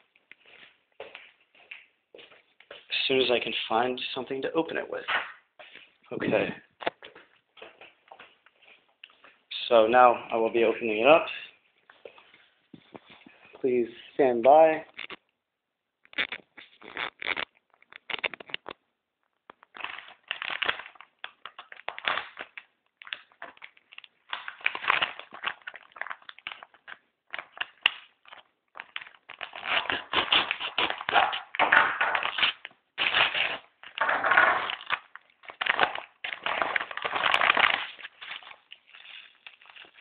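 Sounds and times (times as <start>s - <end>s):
bubble wrap rustling and crinkling: 16.1s - 18.8s, 19.4s - 40.0s
padded envelope tearing: 16.2s - 18.7s, 19.6s - 40.0s.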